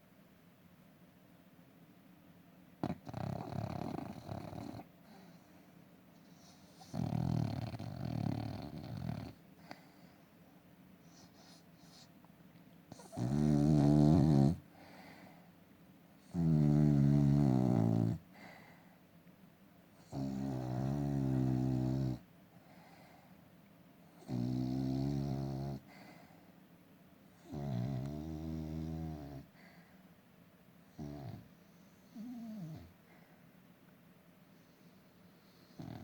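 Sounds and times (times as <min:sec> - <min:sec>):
dog snoring: 0:02.8 - 0:05.5, 0:06.3 - 0:10.0, 0:11.1 - 0:12.1, 0:12.9 - 0:15.2, 0:16.2 - 0:18.7, 0:20.0 - 0:23.1, 0:24.2 - 0:26.3, 0:27.3 - 0:29.8, 0:30.9 - 0:33.0, 0:35.4 - 0:36.0.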